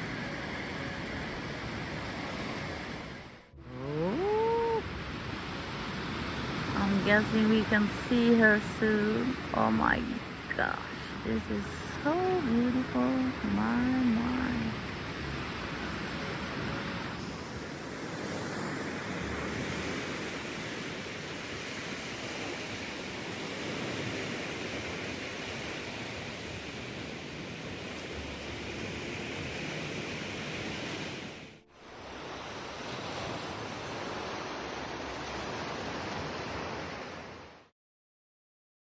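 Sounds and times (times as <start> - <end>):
sea waves washing on shore: 0.0 - 37.6.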